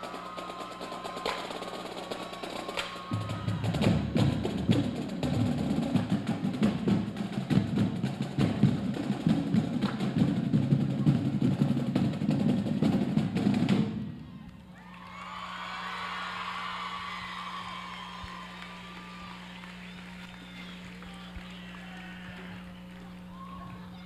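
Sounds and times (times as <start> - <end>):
snare drum rolls: 0.0 - 14.3
marching drumline cadence: 0.0 - 23.9.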